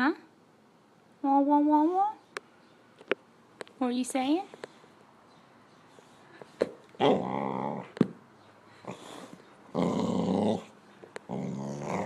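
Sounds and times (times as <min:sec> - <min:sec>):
dog growly moaning: 0:07.0 - 0:08.0, 0:08.8 - 0:12.0.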